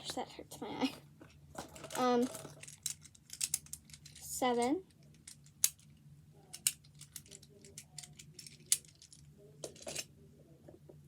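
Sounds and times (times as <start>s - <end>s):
plastic fidget toys clicking: 1.8s - 4.2s, 6.5s - 9.2s.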